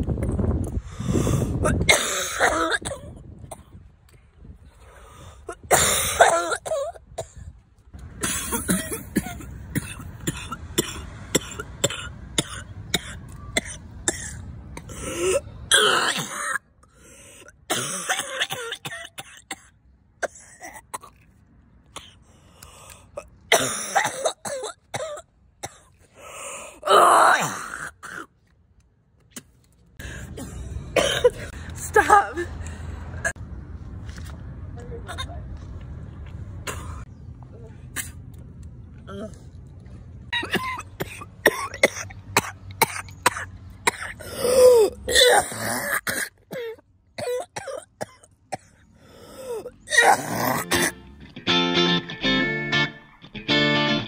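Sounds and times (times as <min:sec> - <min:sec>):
person coughing: 0:01.7 - 0:03.2, 0:08.2 - 0:14.4, 0:17.7 - 0:21.1, 0:23.5 - 0:25.8, 0:30.4 - 0:31.5, 0:49.9 - 0:51.0
person clearing throat: 0:23.5 - 0:25.2, 0:49.9 - 0:51.0.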